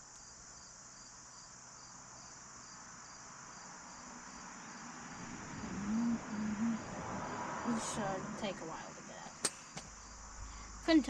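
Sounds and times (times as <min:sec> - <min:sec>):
insects chirping: 0:00.0 - 0:11.0
low hum-like tone: 0:05.5 - 0:08.8.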